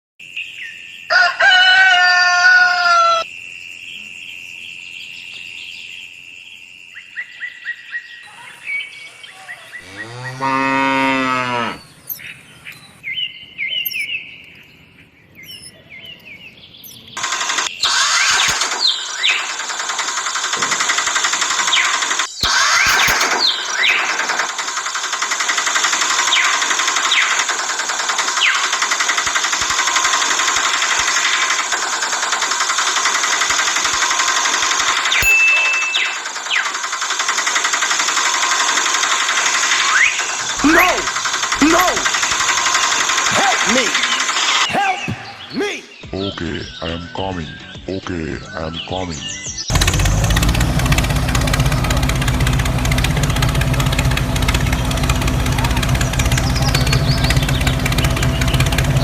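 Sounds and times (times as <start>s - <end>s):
birds chirping: 3.9s - 59.0s
cow mooing: 9.8s - 11.9s.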